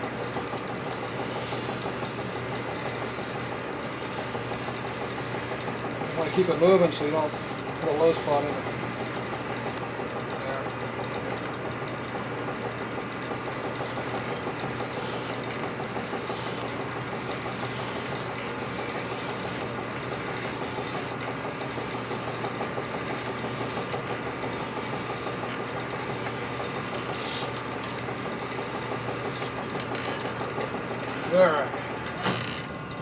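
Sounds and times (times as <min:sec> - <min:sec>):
motor hum: 0:00.0 - 0:33.0
stone rasping inside metal bore: 0:00.1 - 0:09.9, 0:13.0 - 0:29.6.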